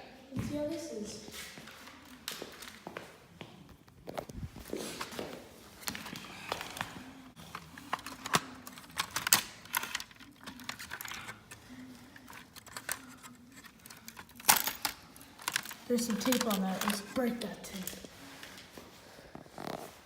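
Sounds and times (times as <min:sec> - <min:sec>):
plastic and metal parts snapping: 0:07.4 - 0:11.6, 0:12.2 - 0:17.1.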